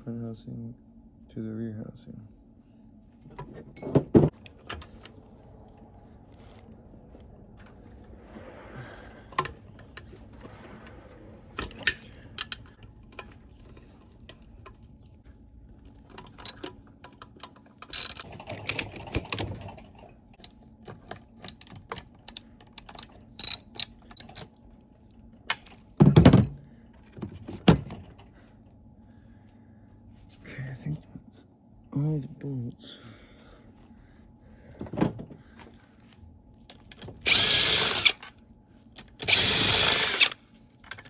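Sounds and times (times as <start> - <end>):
hand ratchet clicking: 21.5 - 24.4, 37.2 - 38.3, 39.2 - 40.5.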